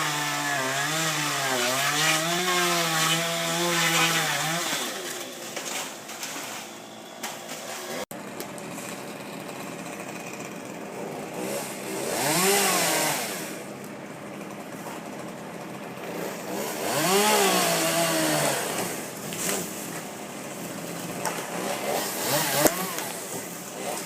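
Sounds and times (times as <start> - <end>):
chainsaw revving: 0.0 - 5.2, 8.7 - 13.7, 14.3 - 24.0.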